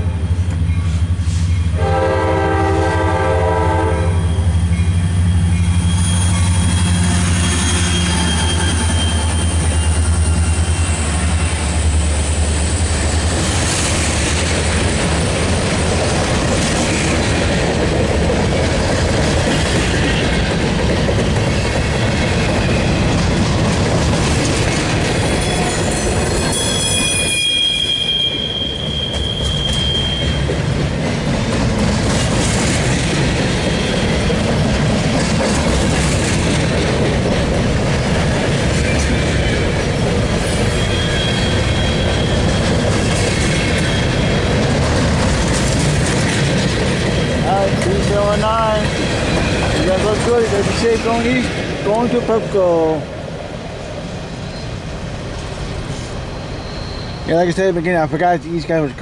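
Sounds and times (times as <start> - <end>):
freight train rumbling and clattering: 0.0 - 59.0
train wheels squealing: 0.5 - 1.8, 4.1 - 14.0, 25.0 - 30.7, 33.5 - 34.5, 38.8 - 44.6, 47.0 - 47.7, 54.2 - 59.0.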